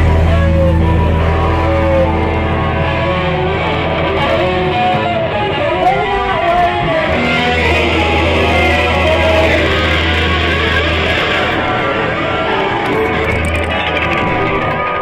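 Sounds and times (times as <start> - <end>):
held low bass note: 0.0 - 5.3
electric guitar: 0.0 - 15.0
live rock band playing: 0.0 - 15.0.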